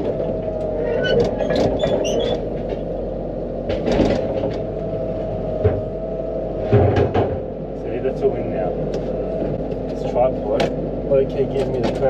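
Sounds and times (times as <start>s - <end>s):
excavator engine running: 0.0s - 12.0s
metal knocks and clunks: 6.6s - 7.5s.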